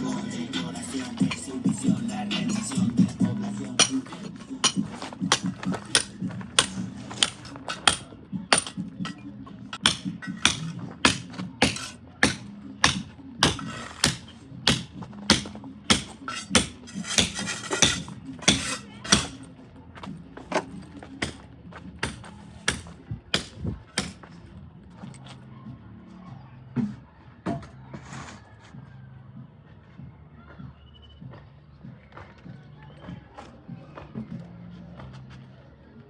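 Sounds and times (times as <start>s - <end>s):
faint music: 0.0s - 36.0s
hammer blows: 1.0s - 19.4s.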